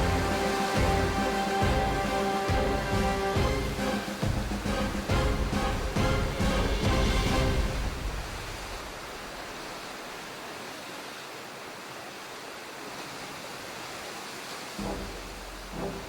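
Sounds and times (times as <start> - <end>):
background music: 0.0 - 8.6, 14.8 - 16.0
sea and wind hiss: 0.0 - 16.0.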